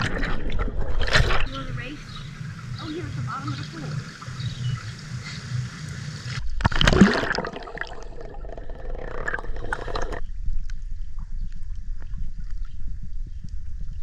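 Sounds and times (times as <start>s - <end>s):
water splashing in pool: 0.0s - 10.2s
muffled underwater rumble: 0.0s - 14.0s.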